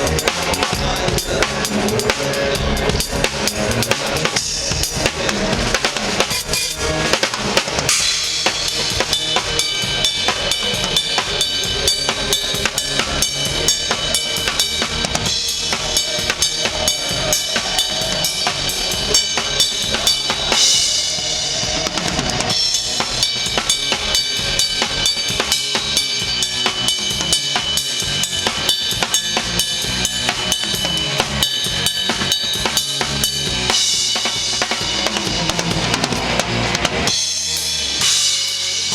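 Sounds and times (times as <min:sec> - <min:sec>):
cymbals ringing: 0:08.0 - 0:21.7, 0:22.5 - 0:35.8.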